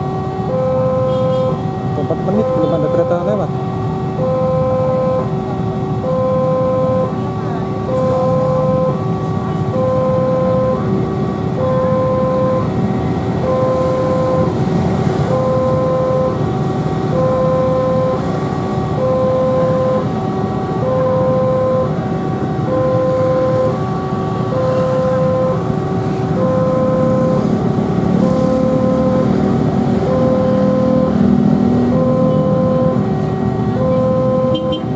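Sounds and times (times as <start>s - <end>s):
level crossing two-tone alarm: 0.0s - 34.9s
road traffic rumble: 0.0s - 34.9s.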